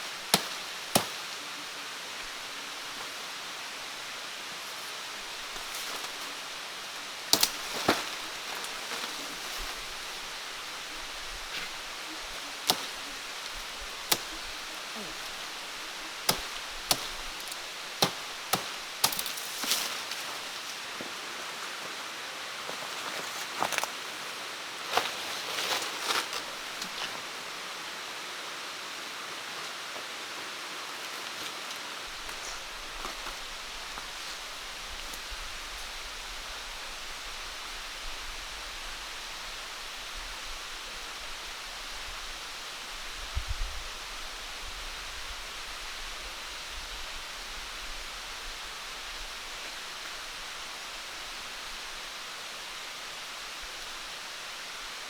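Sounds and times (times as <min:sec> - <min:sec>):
steady background hiss: 0:00.0 - 0:55.0
blade chopping wood: 0:00.3 - 0:01.3, 0:07.3 - 0:08.2, 0:12.6 - 0:13.0, 0:14.0 - 0:15.5, 0:16.2 - 0:20.0.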